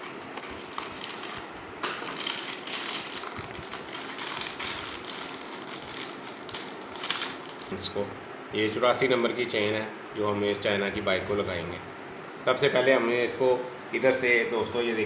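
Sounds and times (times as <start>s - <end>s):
packaging crinkling and clicking: 0.0s - 7.7s.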